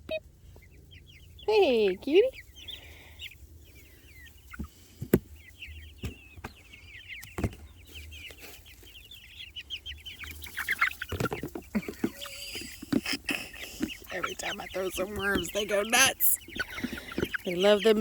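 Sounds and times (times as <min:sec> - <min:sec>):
chicks peeping: 0:00.0 - 0:18.0.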